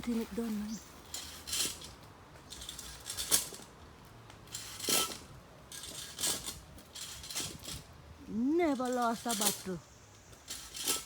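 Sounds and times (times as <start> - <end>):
metallic clanks of climbing device: 1.1 - 3.7, 4.5 - 7.9, 10.4 - 11.0.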